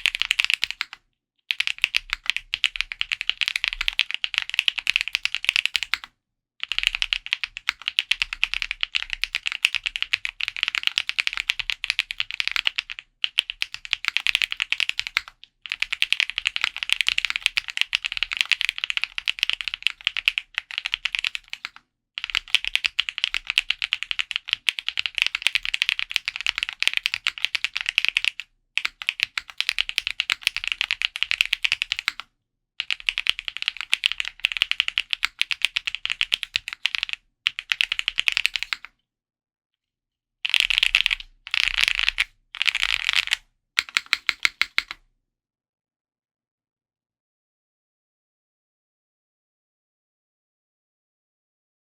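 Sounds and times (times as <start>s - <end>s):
typing on mechanical keyboard: 0.0s - 38.9s, 40.5s - 45.0s.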